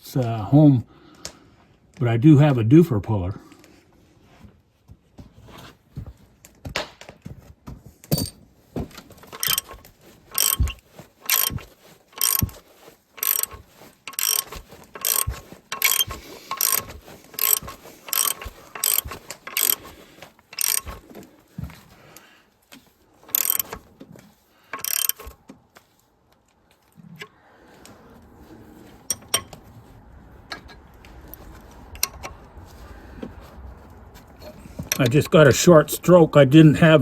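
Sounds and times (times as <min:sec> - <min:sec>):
ratchet wrench clicking: 0:09.3 - 0:11.6, 0:12.2 - 0:12.6, 0:13.2 - 0:19.9, 0:20.5 - 0:21.0, 0:23.3 - 0:23.8, 0:24.8 - 0:25.3, 0:29.1 - 0:29.6.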